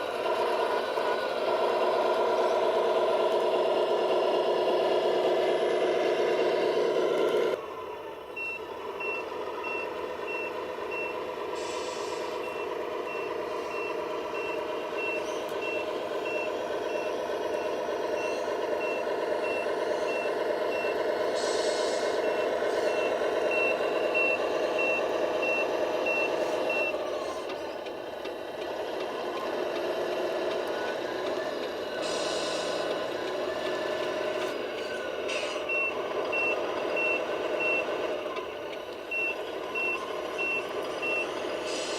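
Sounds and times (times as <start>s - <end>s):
continuous mechanical whir: 0.0s - 41.9s
reversing beeper: 7.8s - 27.2s, 30.8s - 38.1s, 39.1s - 41.9s
short hisses: 11.6s - 12.4s, 21.4s - 22.2s, 32.0s - 32.8s, 41.6s - 41.9s.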